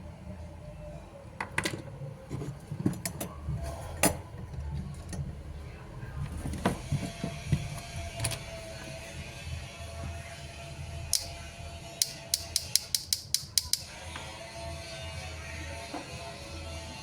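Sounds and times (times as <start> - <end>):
sharp clicks and taps: 12.0 - 13.9.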